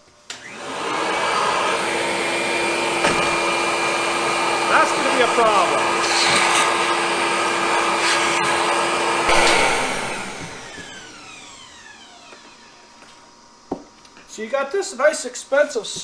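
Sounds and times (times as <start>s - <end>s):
miter saw motor winding down: 2.9s - 12.9s.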